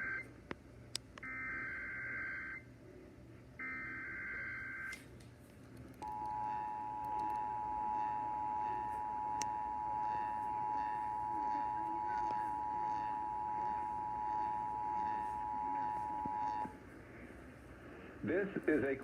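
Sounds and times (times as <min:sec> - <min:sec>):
two-tone emergency alert tone: 0:06.0 - 0:16.7.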